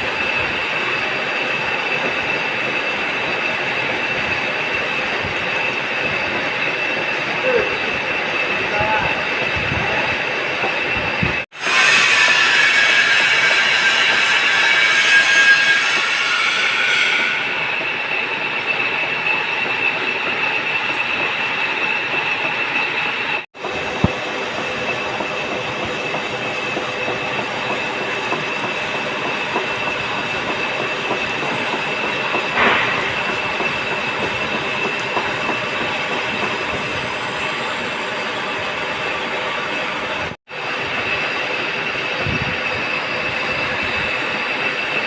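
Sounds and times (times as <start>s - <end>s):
metal lathe machining: 0.0s - 45.0s.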